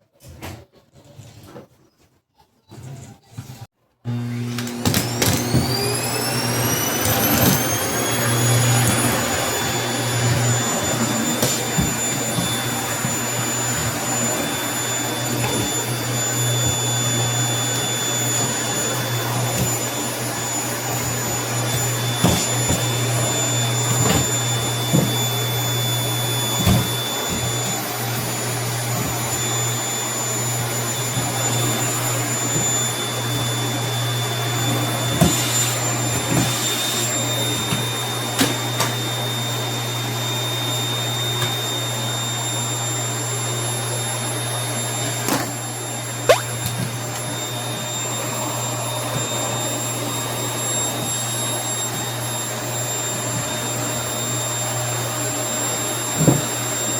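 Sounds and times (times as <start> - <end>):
vacuum cleaner motor whine: 4.1 - 56.9
vacuum knocking on floor: 10.2 - 14.3, 21.0 - 25.3, 26.6 - 27.8, 56.2 - 56.5.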